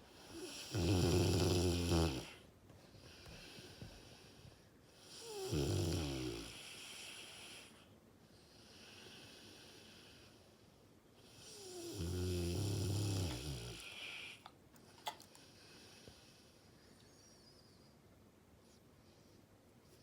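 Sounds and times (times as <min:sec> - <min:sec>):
dog snoring: 0:00.1 - 0:02.4, 0:05.0 - 0:07.8, 0:11.2 - 0:14.4
dog breathing hiss: 0:06.3 - 0:11.8, 0:13.0 - 0:16.8.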